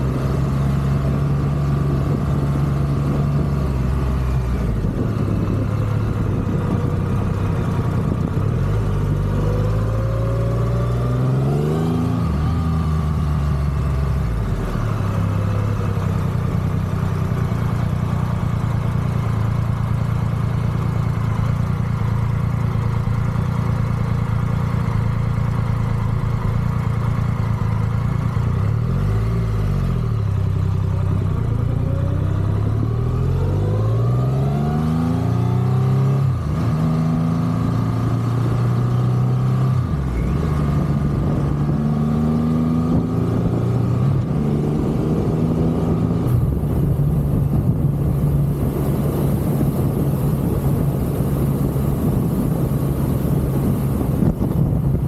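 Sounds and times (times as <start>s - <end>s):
motorcycle engine accelerating: 0.0s - 55.0s.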